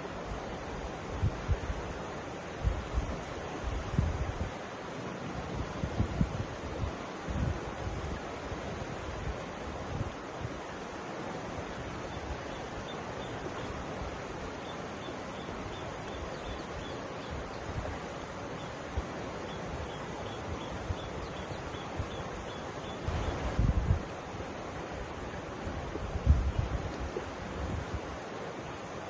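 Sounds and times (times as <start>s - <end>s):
river flowing: 0.0s - 29.0s
wind buffeting microphone: 2.6s - 4.5s, 5.3s - 10.1s, 23.0s - 24.1s, 25.7s - 28.1s.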